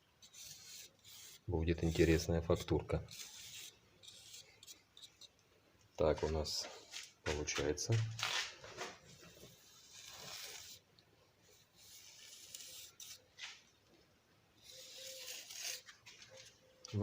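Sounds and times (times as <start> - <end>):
tool scraping wet mortar: 0.2 - 5.2, 8.4 - 10.8, 11.8 - 13.3, 14.6 - 16.4.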